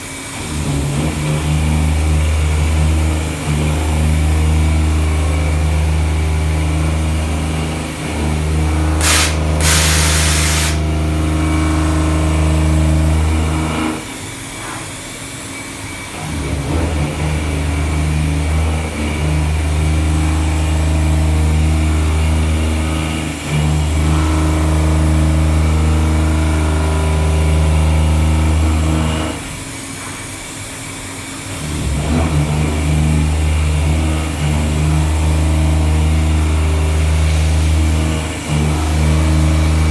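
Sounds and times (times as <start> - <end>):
milling machine hum: 0.1 - 14.0, 30.8 - 39.9
short hissing bursts: 9.0 - 10.9.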